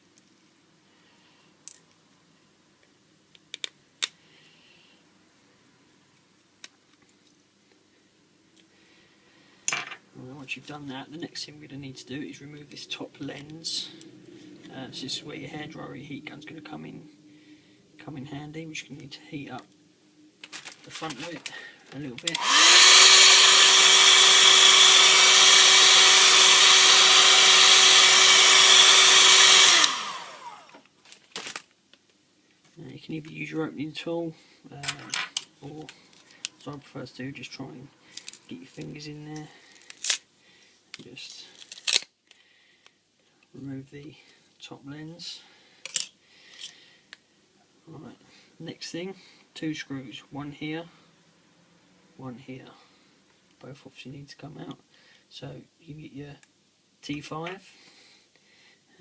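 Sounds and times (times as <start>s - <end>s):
hot-air blower whining: 21.0s - 30.8s.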